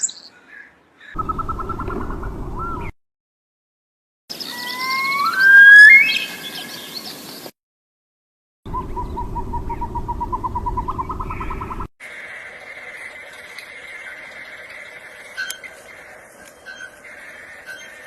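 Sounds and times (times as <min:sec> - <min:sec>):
whistled bird call: 0:04.3 - 0:07.1, 0:16.6 - 0:17.0.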